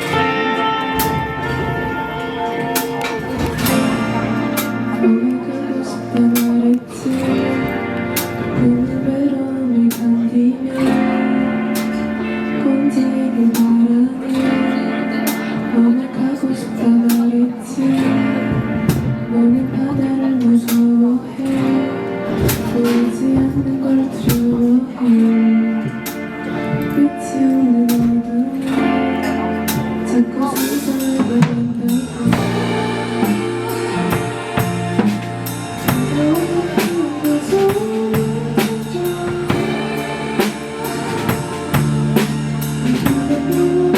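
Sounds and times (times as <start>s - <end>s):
drum kit and cymbals: 0.0s - 5.1s, 30.6s - 43.9s
acoustic guitar strumming: 0.0s - 43.9s
person singing: 0.0s - 43.9s.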